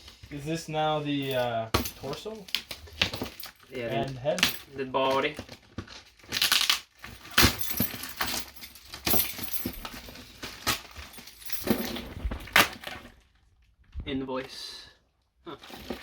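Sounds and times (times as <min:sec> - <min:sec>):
packaging crinkling and rustling: 0:05.0 - 0:13.6, 0:15.6 - 0:16.0.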